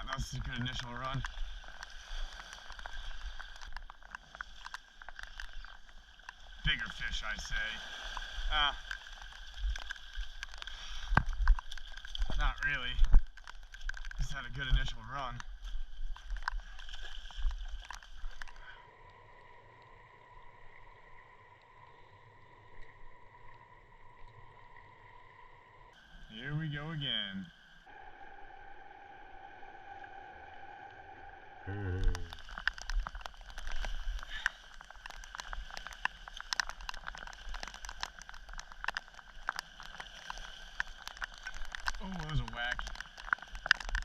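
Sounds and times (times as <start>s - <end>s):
rain tapping: 0.0s - 19.8s, 32.0s - 44.0s
faint high hum: 18.7s - 32.3s
low wind rumble: 27.6s - 34.5s.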